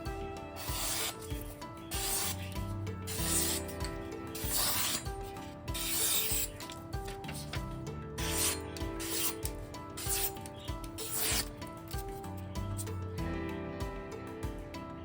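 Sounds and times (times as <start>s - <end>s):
knife sharpening on whetstone: 0.6s - 1.3s, 1.9s - 5.1s, 5.7s - 6.8s, 8.2s - 10.4s, 11.0s - 11.5s.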